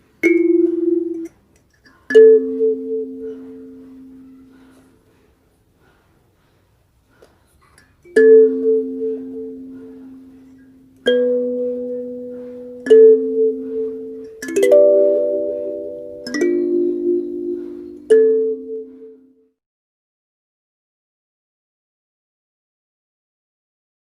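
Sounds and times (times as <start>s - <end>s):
kalimba plucked notes: 0.2s - 1.4s, 2.1s - 4.6s, 8.1s - 19.3s.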